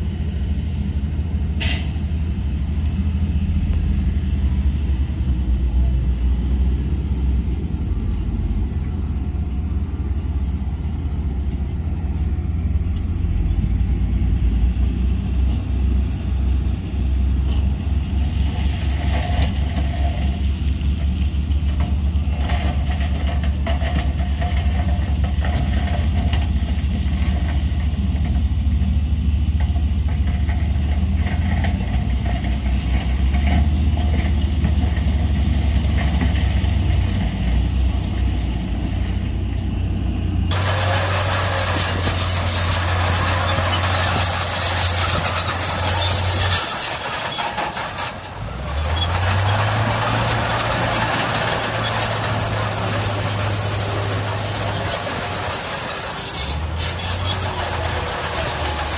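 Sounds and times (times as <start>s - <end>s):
diesel machinery engine drone: 0.0s - 58.9s
harsh grinding and squealing: 12.1s - 58.9s.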